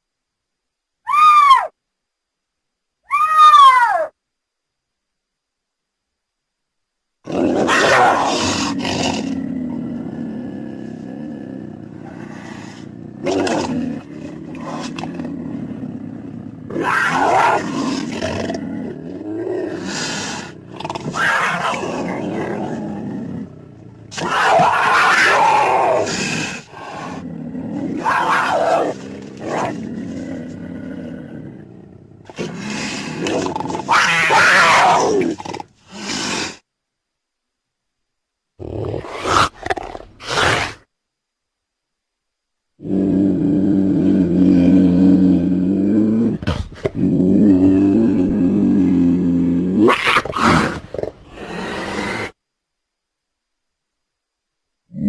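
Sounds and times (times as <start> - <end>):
cougar growling and snarling: 7.2 - 36.6, 38.6 - 40.9, 42.8 - 52.4.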